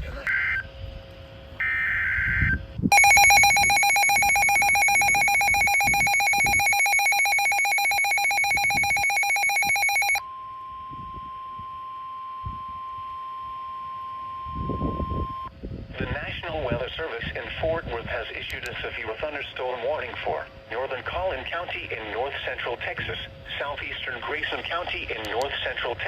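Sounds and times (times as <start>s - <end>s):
pulsing electronic alarm: 0.3s - 0.7s, 1.6s - 10.2s
steady warning alarm tone: 1.6s - 10.2s
screechy data burst: 2.9s - 10.2s.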